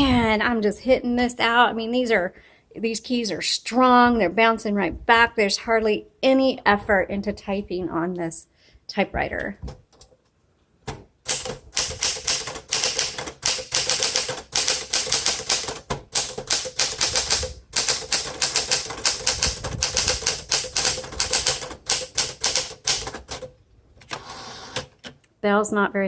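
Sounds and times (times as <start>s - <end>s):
manual typewriter typing: 11.2s - 25.2s.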